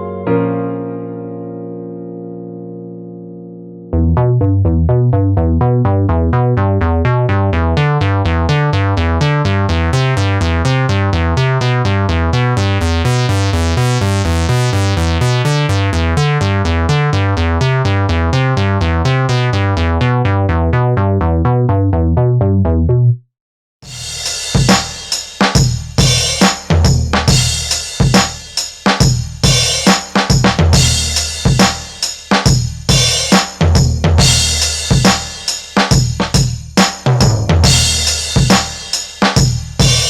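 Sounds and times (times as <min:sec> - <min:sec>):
synthesizer repeated bass notes: 0:02.8 - 0:23.3, 0:30.4 - 0:31.9, 0:32.5 - 0:40.0.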